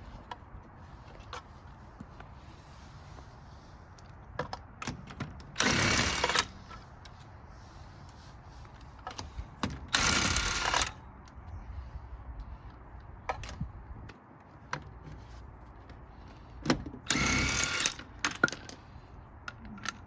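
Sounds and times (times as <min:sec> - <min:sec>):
impact wrench bursts: 0:05.5 - 0:06.6, 0:09.9 - 0:11.0, 0:17.0 - 0:18.7.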